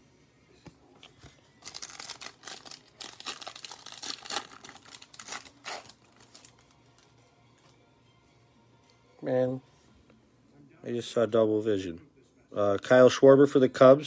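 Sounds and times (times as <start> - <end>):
foil wrapper crinkling and tearing: 1.6 - 7.1.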